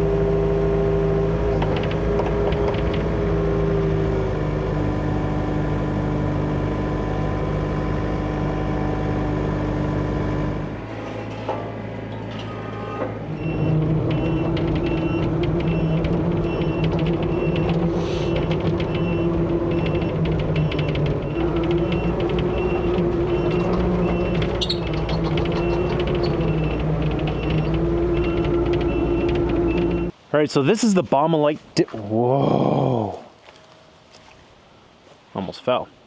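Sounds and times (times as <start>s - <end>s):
diesel excavator engine running: 0.0s - 30.2s
travel alarm beeping: 13.4s - 30.1s.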